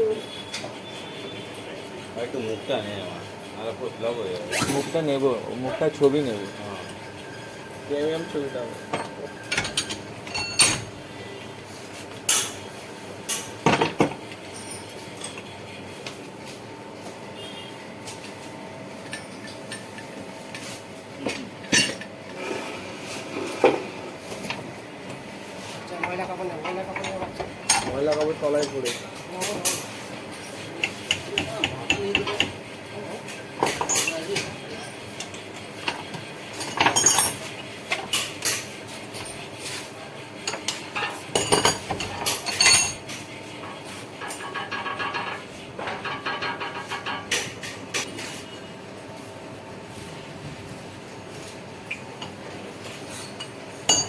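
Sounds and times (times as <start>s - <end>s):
metal tools clinking: 8.9s - 10.9s, 14.5s - 15.4s, 33.7s - 35.0s, 36.6s - 37.5s, 40.5s - 43.1s, 53.1s - 54.0s
metal tools clinking and knocking: 8.9s - 10.9s, 19.0s - 20.1s, 26.6s - 31.2s, 33.7s - 35.0s, 36.0s - 38.6s, 40.5s - 43.2s, 44.2s - 48.4s, 53.1s - 54.0s.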